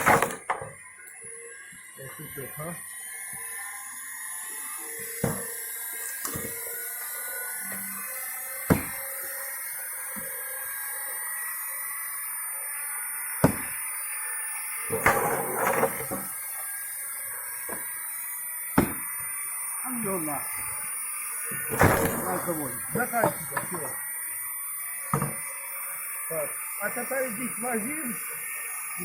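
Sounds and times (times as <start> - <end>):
splitting maul striking log: 8.7 - 9.0, 13.4 - 13.8, 18.8 - 19.1
high whine: 18.8 - 29.0.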